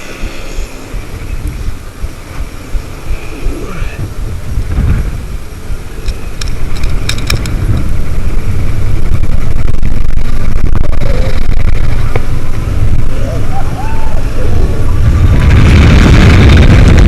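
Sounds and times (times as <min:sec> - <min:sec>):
sharp clicks and rattles: 0:00.0 - 0:13.2
wind buffeting microphone: 0:00.0 - 0:17.0.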